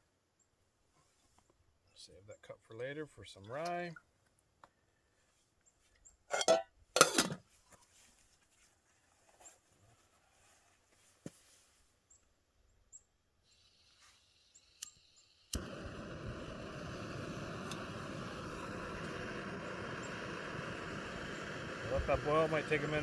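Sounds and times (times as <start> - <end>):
gas hissing: 13.5 - 23.0
gas burner roar: 14.6 - 23.0
stove igniter click: 14.8 - 23.0
stove lighting pop: 15.5 - 23.0.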